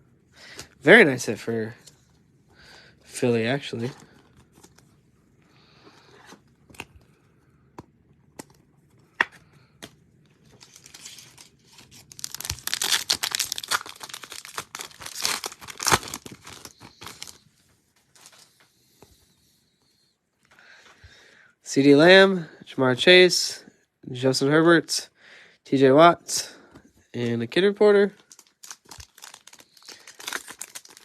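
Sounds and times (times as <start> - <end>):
wrapper tearing and crinkling: 10.5 - 17.4, 28.2 - 31.0.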